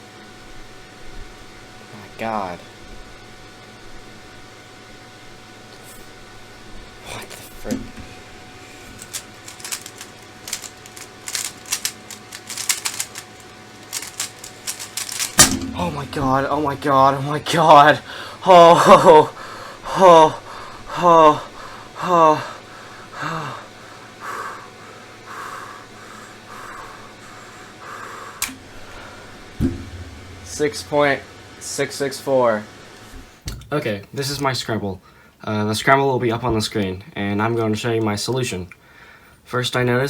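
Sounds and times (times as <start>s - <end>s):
puzzle cube layers clicking: 9.0s - 15.4s
person breathing hard: 18.0s - 18.5s, 19.3s - 29.4s, 38.8s - 39.4s.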